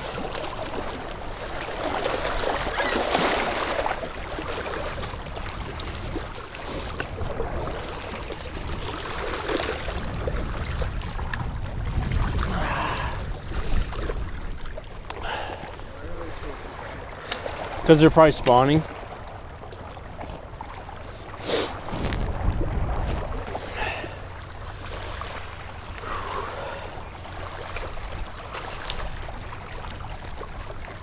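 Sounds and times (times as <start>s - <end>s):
water lapping at shore: 0.0s - 31.0s
wind buffeting microphone: 4.8s - 17.8s, 21.8s - 24.4s.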